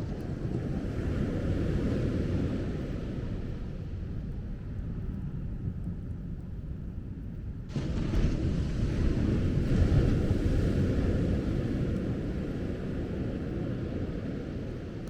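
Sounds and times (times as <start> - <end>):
waves breaking on beach: 0.0 - 3.6, 7.7 - 15.0
wind on microphone: 0.0 - 15.0.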